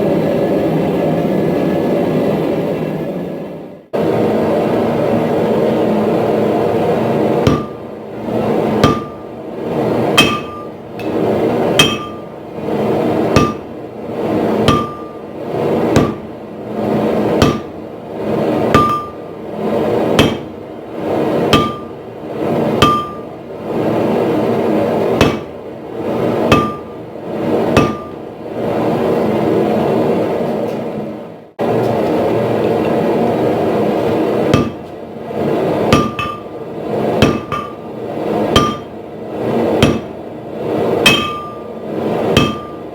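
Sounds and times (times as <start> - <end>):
sledgehammer striking steel on anvil: 7.4 - 7.9, 8.7 - 9.3, 10.1 - 12.3, 13.2 - 13.8, 14.6 - 16.4, 17.3 - 17.8, 18.6 - 19.3, 20.1 - 20.6, 21.4 - 22.0, 22.8 - 23.4, 25.2 - 25.6, 26.2 - 27.0, 27.6 - 28.2, 34.4 - 35.0, 35.9 - 39.0, 39.7 - 40.2, 41.0 - 42.9.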